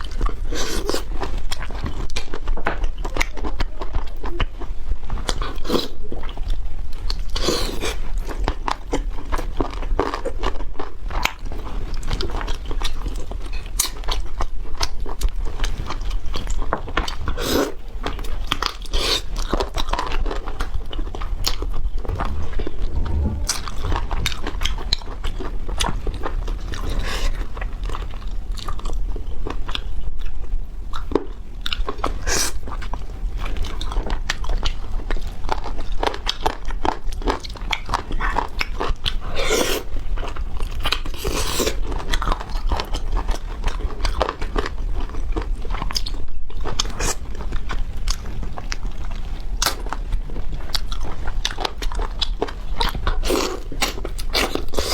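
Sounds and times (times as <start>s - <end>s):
crunching bites and chewing: 40.6s - 54.9s.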